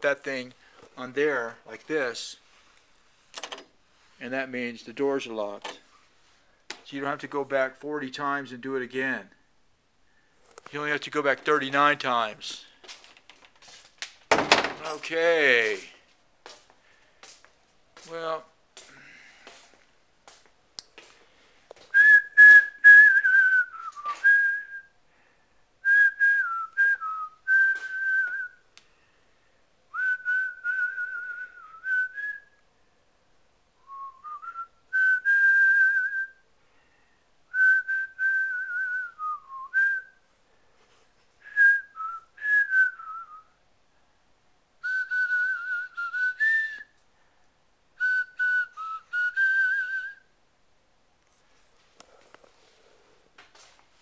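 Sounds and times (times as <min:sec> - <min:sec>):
person whistling a tune: 0:21.9 - 0:24.9, 0:25.8 - 0:28.6, 0:29.9 - 0:32.6, 0:33.8 - 0:36.4, 0:37.5 - 0:40.2, 0:41.4 - 0:43.5, 0:44.8 - 0:46.9, 0:48.0 - 0:50.2.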